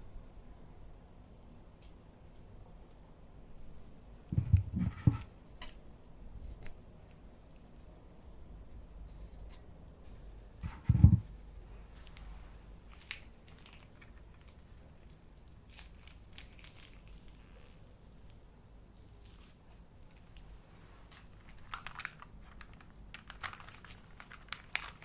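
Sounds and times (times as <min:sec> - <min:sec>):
loud low thump: 0:04.3 - 0:05.2.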